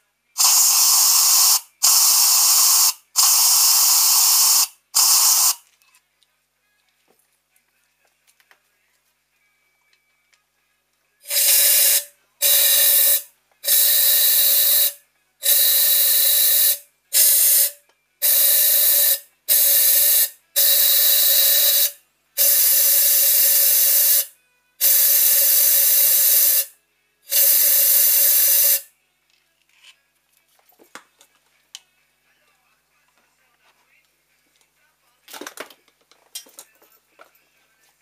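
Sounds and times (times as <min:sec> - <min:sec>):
spray nozzle hissing: 0:00.4 - 0:05.6, 0:11.3 - 0:26.7, 0:27.3 - 0:28.8
steady whistle: 0:11.3 - 0:24.3.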